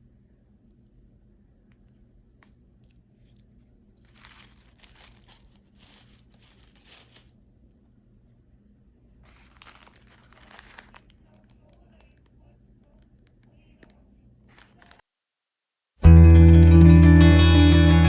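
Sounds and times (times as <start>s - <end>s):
packaging tearing and crinkling: 4.0s - 7.3s, 9.2s - 11.8s, 14.5s - 15.0s.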